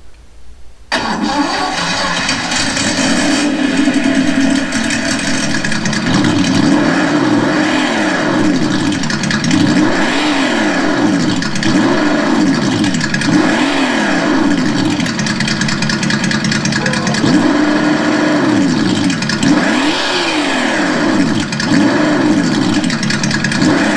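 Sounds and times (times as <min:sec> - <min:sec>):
simulated engine revving from speaker: 0:16.7 - 0:22.9.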